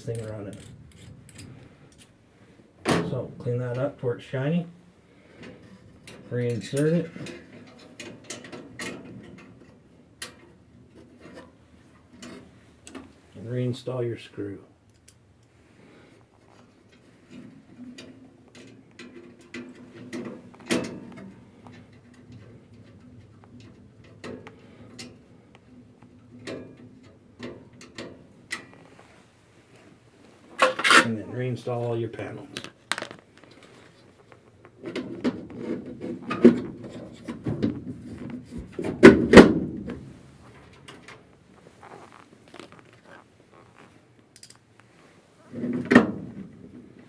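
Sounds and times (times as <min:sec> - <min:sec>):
light metal clicks and scraping: 0:00.0 - 0:02.2, 0:05.3 - 0:13.3, 0:16.4 - 0:29.9, 0:43.8 - 0:45.0
faint handling noise: 0:00.0 - 0:04.5, 0:05.1 - 0:47.0
faint steady hum: 0:00.0 - 0:47.0.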